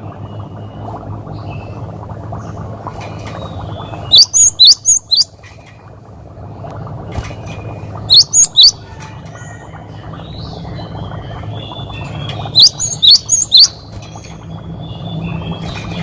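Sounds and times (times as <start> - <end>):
soft bird twittering: 2.4 - 5.4, 7.4 - 16.0.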